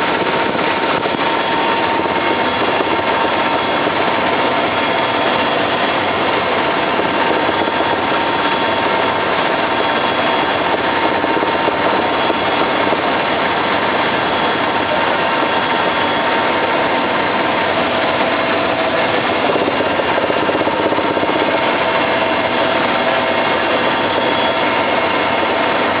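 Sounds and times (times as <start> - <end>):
helicopter engine and rotor drone: 0.0 - 26.0.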